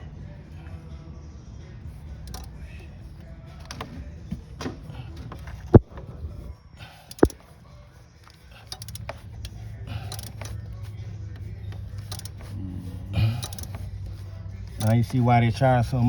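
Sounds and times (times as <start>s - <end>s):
hand tools clicking and rattling: 2.2s - 2.9s, 6.8s - 7.5s, 8.2s - 16.0s.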